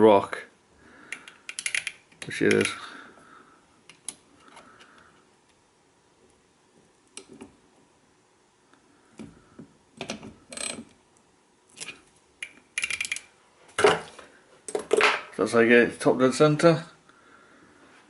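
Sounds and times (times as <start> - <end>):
metallic clicks and clanks: 1.1 - 2.8, 11.8 - 13.3
ratchet clicks: 1.2 - 2.8.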